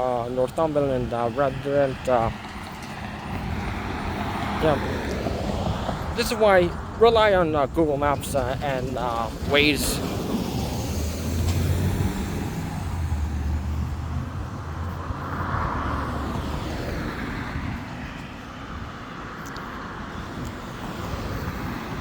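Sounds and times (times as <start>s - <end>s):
vehicle engine rumble: 0.0s - 22.0s.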